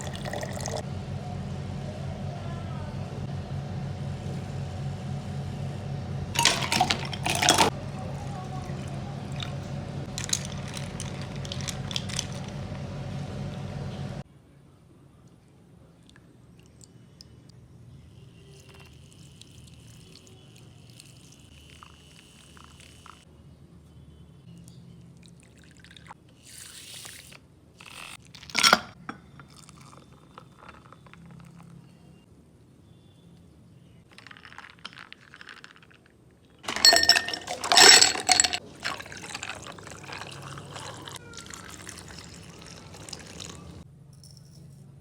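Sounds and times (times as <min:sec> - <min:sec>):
liquid being poured: 0:00.0 - 0:00.8, 0:36.6 - 0:43.8.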